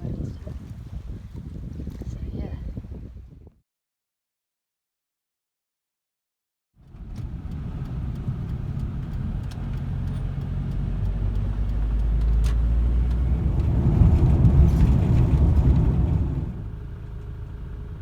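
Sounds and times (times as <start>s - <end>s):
vehicle engine and road rumble: 6.8s - 18.0s.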